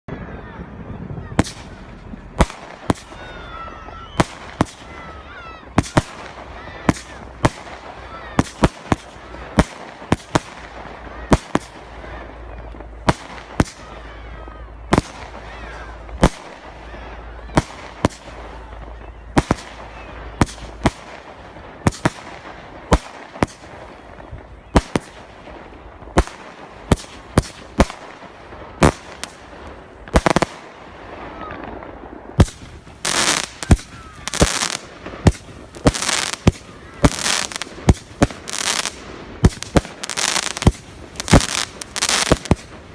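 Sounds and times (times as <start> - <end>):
fireworks crackling: 0.0 - 42.9
fireworks banging: 0.1 - 42.9.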